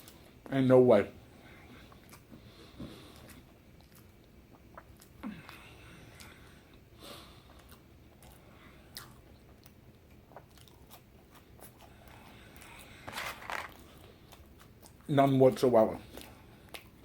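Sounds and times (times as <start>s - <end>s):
man chewing food: 0.0s - 0.6s, 1.2s - 17.0s.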